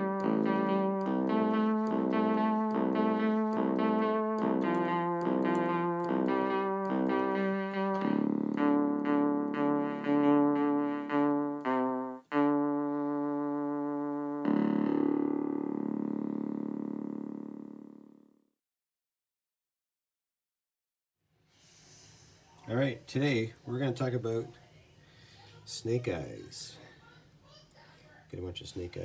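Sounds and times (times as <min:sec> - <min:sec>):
piano-like keyboard music: 0:00.0 - 0:16.4.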